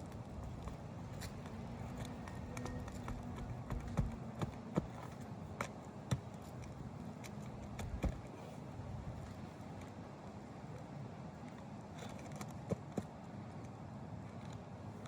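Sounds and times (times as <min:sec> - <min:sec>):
low background hum: 0:00.0 - 0:15.0
sharp knocks and taps: 0:00.5 - 0:08.3.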